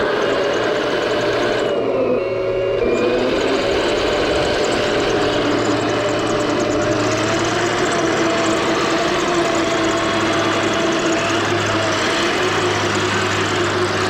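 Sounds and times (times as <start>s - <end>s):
low hum: 0.0s - 14.0s
toy tank mechanical whine: 0.0s - 14.0s.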